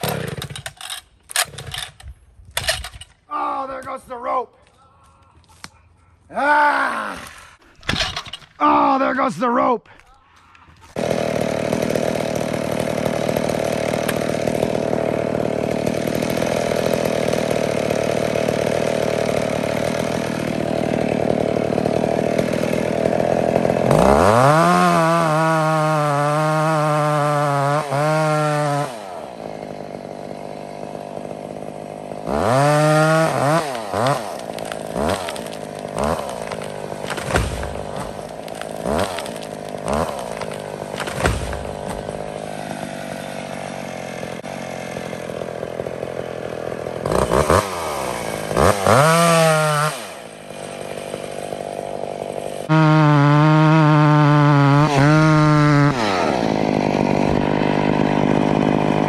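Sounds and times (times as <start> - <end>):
chainsaw running and revving: 0.0 - 2.0, 10.9 - 59.0.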